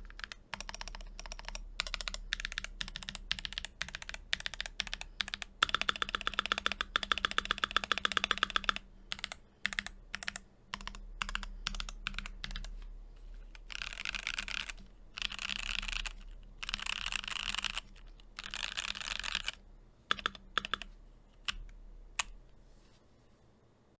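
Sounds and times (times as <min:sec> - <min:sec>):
mechanical keyboard typing: 0:00.0 - 0:12.8, 0:13.5 - 0:22.4.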